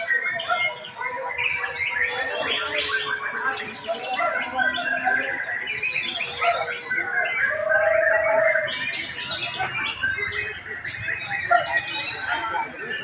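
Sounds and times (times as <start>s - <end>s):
songbirds chirping and singing: 0.0s - 13.0s.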